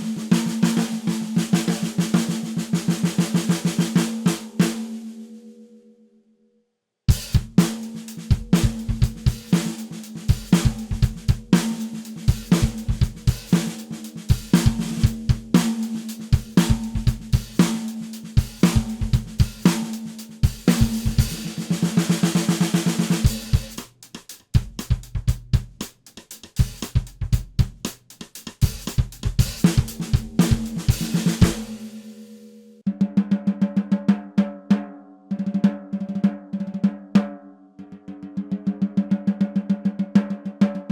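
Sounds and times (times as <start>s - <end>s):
snare drum roll: 0.0s - 5.2s, 7.1s - 34.0s
snare drum strokes: 0.0s - 5.3s, 7.1s - 25.0s, 27.8s - 32.6s.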